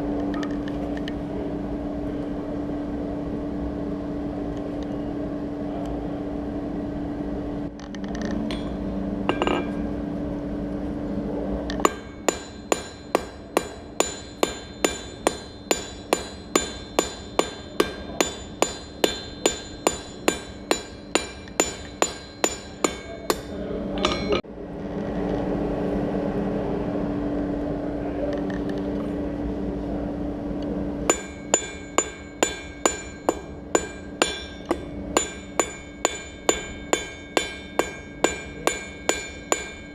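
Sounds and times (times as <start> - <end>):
low hum: 0.0 - 39.9
hammer striking steel on anvil: 8.5 - 9.8, 11.8 - 24.4, 31.1 - 39.9.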